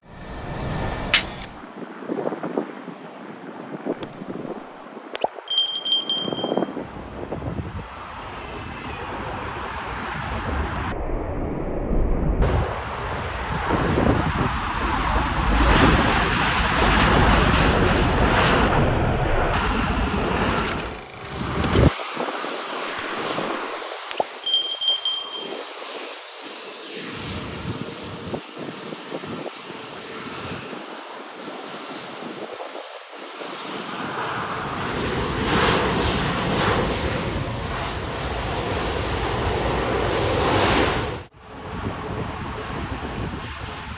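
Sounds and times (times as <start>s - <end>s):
jet engine noise: 0.0s - 1.6s, 12.7s - 43.8s.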